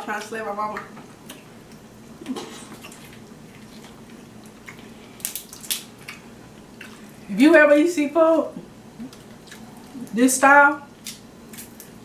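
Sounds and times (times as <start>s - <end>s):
wet eating sounds: 0.2s - 7.2s, 8.9s - 10.2s.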